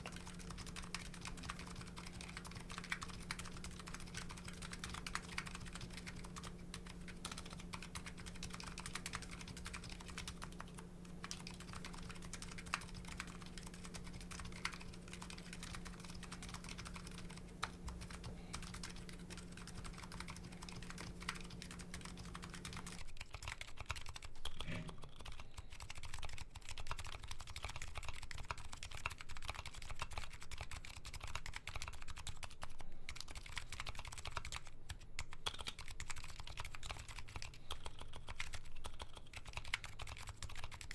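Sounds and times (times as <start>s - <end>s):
low steady hum: 0.0s - 23.1s
keyboard typing clacks: 0.0s - 24.6s.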